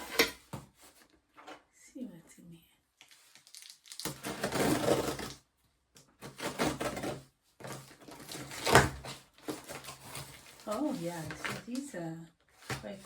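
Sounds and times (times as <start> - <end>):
plastic packaging rustling: 3.0 - 5.4, 6.2 - 12.0.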